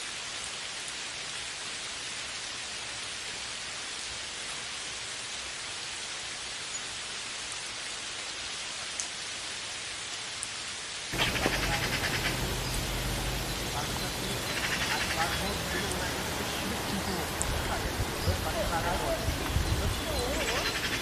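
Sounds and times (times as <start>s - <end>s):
steady rain falling: 0.0s - 21.0s
louder raindrop: 10.1s - 21.0s.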